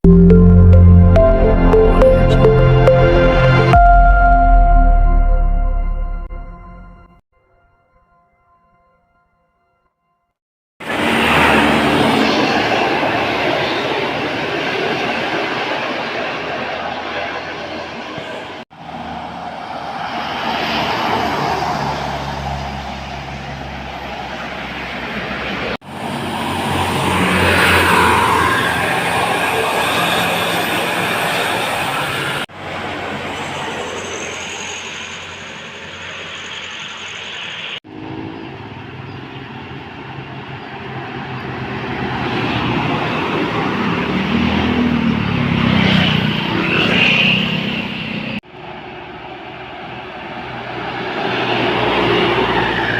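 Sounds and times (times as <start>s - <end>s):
diesel engine drone: 0.0s - 7.1s
bus driving past: 17.5s - 52.9s.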